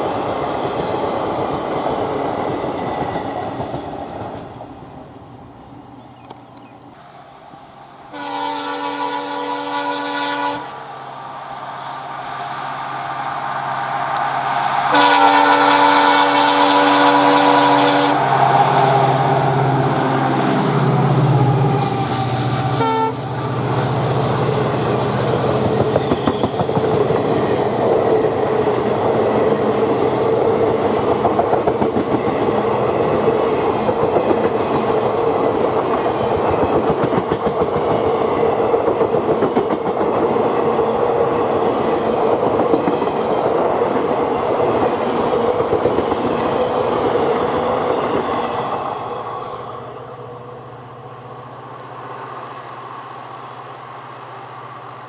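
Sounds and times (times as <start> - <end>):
train wheels clattering over rails: 21.4 - 49.2.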